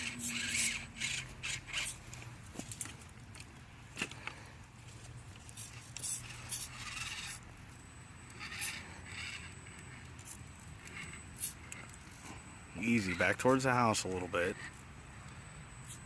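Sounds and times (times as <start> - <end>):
toy car tyres scraping: 0.0 - 3.1, 4.8 - 7.5, 8.3 - 13.4.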